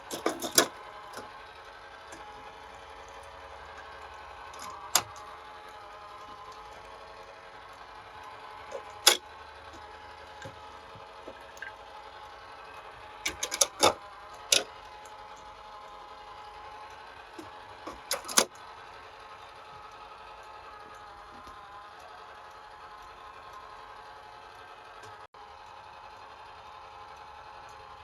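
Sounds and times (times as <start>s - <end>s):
plastic toy clicks and clacks: 0.0s - 1.5s, 2.1s - 11.9s, 12.7s - 16.0s, 16.9s - 18.7s.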